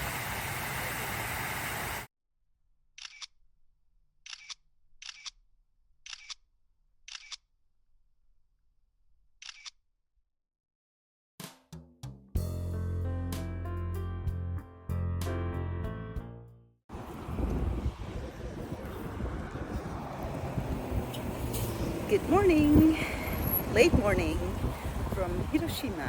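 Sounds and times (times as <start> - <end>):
camera shutter clicks: 3.0 - 3.3, 4.3 - 5.4, 6.1 - 6.4, 9.4 - 9.8
steady rushing noise: 16.9 - 26.0.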